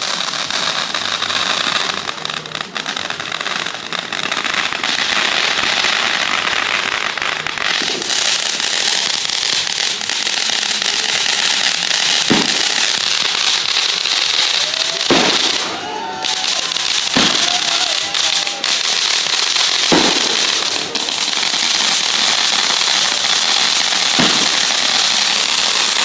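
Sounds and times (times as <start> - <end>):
fireworks crackling: 0.0 - 26.0
firework bang: 7.5 - 10.0, 10.7 - 26.0.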